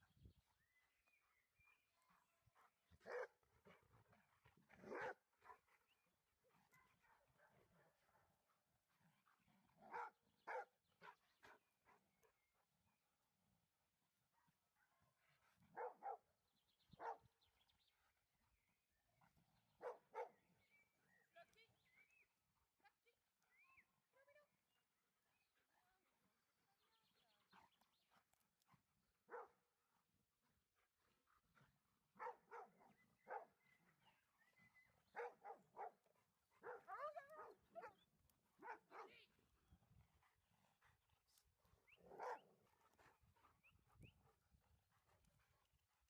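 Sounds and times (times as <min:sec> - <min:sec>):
faint dog noises: 0:01.3 - 0:12.9, 0:14.2 - 0:46.0
large dogs barking: 0:02.9 - 0:05.7, 0:09.7 - 0:11.6, 0:15.5 - 0:16.2, 0:17.0 - 0:17.2, 0:19.8 - 0:20.4, 0:29.3 - 0:29.6, 0:31.0 - 0:33.6, 0:35.0 - 0:39.3, 0:40.2 - 0:45.8.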